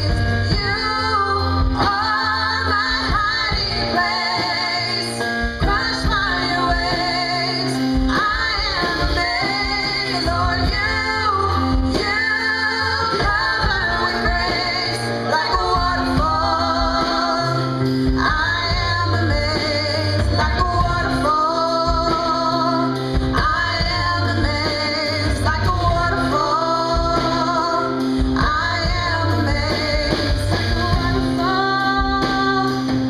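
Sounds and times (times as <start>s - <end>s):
woman singing with vibrato: 0.0s - 33.0s.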